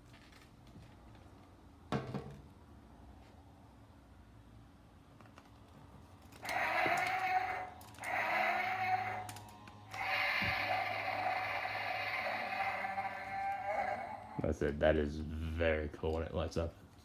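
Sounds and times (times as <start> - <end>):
toy speaker electronic sound: 6.4 - 14.4.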